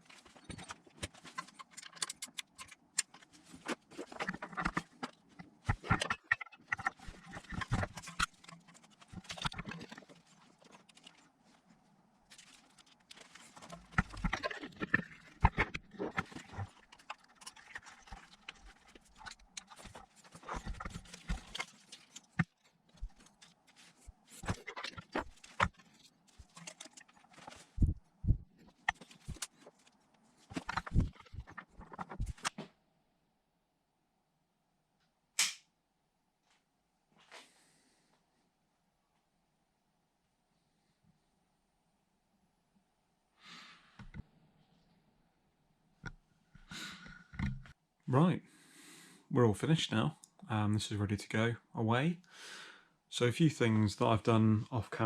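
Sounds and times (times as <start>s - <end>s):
wiring loom rustling and clicking: 0.0s - 32.7s.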